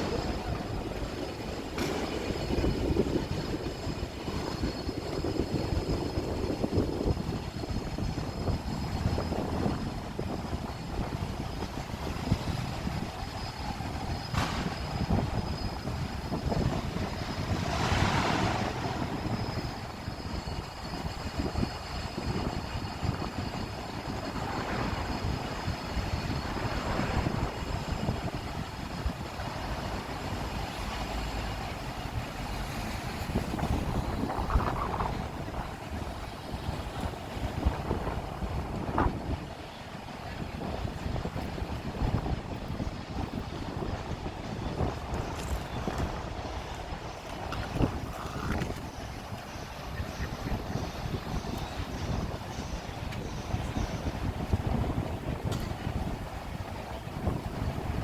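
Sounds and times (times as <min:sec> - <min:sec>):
rumble of passing vehicles: 0:00.0 - 0:58.0.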